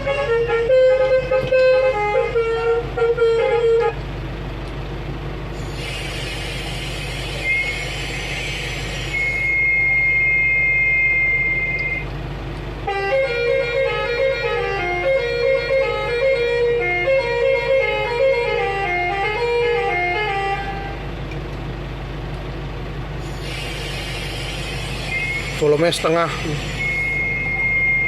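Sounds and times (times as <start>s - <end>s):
horn tooting melody: 0.0s - 4.3s, 12.8s - 21.4s
hiss with high whistle: 5.6s - 11.6s, 23.2s - 28.0s.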